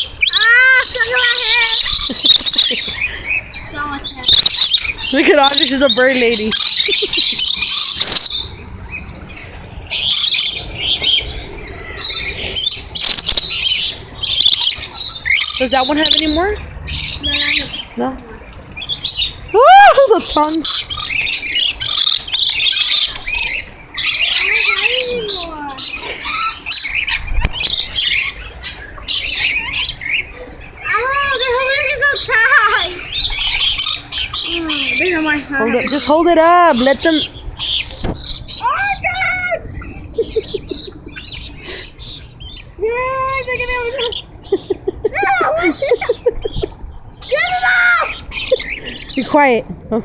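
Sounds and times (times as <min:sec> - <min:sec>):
lorikeets screeching and squawking: 0:00.0 - 0:49.6.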